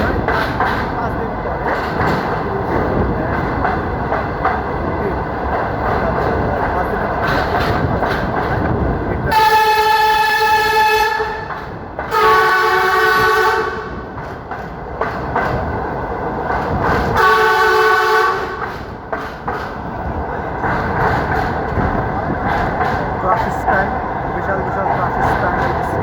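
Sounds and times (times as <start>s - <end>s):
train rumbling on rails: 0.0s - 26.0s
train horn blasts: 9.3s - 14.0s, 17.1s - 18.7s.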